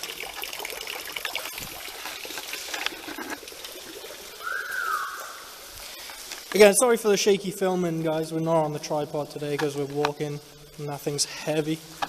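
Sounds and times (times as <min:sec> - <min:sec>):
water trickling and dripping: 0:00.0 - 0:12.0
falling whistle-like tone: 0:04.4 - 0:05.5.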